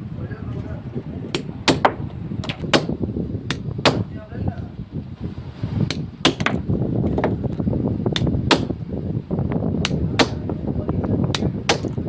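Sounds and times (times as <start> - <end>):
steady low rumble: 0.0 - 12.0
sharp knocks in pairs: 1.3 - 4.1, 5.9 - 6.6, 8.2 - 8.8, 9.8 - 10.5, 11.3 - 12.0.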